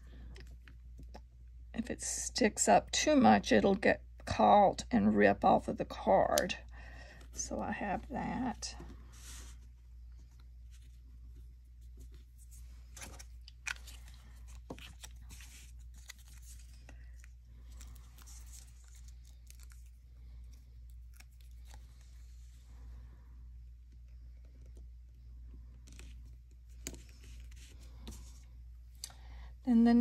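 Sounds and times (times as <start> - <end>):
paper rustling: 10.2 - 22.4.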